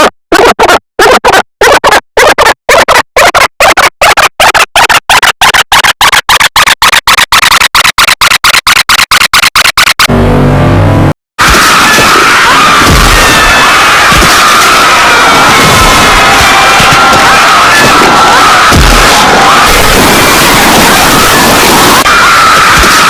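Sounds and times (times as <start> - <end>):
stuttering static bursts: 0.0 - 10.6, 11.4 - 23.0
low electronic buzz: 10.1 - 14.0.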